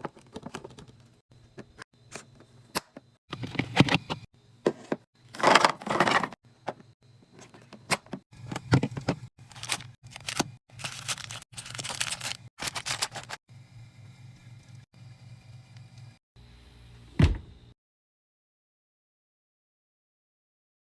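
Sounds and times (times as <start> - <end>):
items clicking and knocking: 0.0 - 13.4
packaging crinkling and tearing: 9.4 - 13.4.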